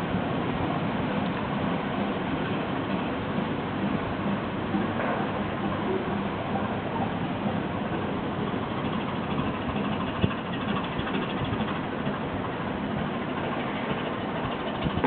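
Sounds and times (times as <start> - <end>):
bridge machinery running: 0.0 - 15.0.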